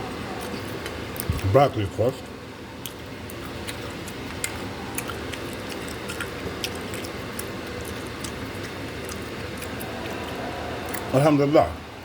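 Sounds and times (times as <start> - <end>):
person chewing food: 0.0 - 1.6, 2.8 - 11.1
low hum: 7.7 - 12.0.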